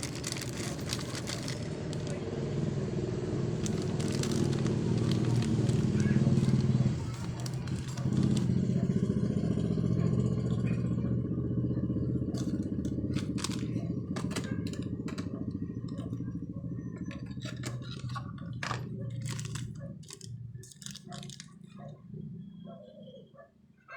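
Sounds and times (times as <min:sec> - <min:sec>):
parts clicking and rattling: 0:00.0 - 0:02.2, 0:03.6 - 0:10.1, 0:12.4 - 0:21.8
motorcycle engine idling: 0:00.0 - 0:21.5.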